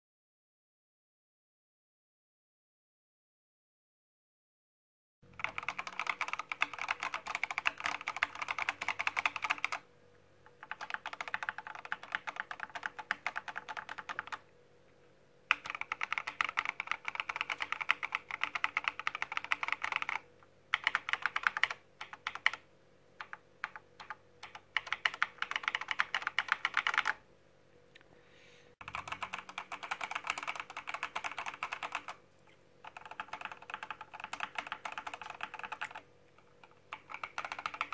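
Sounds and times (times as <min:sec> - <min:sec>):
mechanical keyboard typing: 0:05.3 - 0:09.8, 0:10.4 - 0:14.4, 0:15.5 - 0:27.2, 0:28.8 - 0:32.2, 0:32.8 - 0:37.9.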